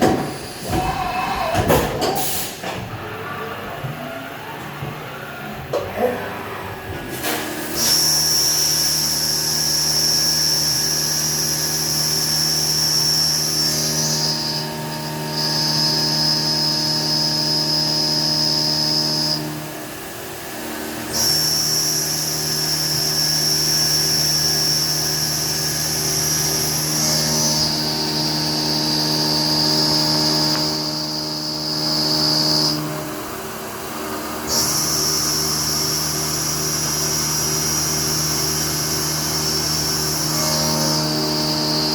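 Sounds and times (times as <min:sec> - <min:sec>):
high spindle whine: 0:03.0 - 0:41.9.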